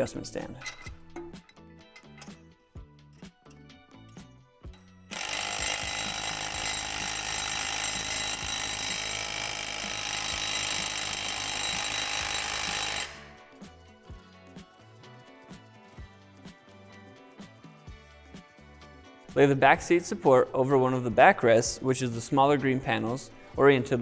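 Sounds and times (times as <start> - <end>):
light background music: 0.0 - 24.0
power drill running: 5.1 - 13.4.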